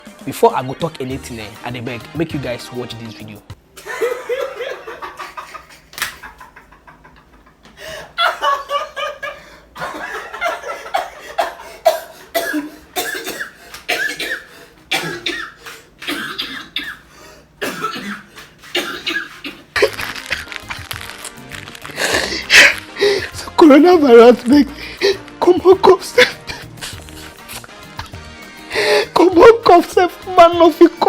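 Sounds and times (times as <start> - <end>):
person coughing: 9.3 - 20.5.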